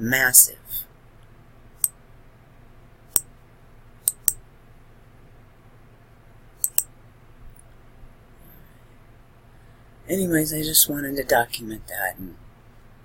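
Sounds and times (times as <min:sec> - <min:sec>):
faint low hum: 0:00.0 - 0:13.0
computer mouse clicking: 0:04.0 - 0:04.4, 0:06.6 - 0:06.9.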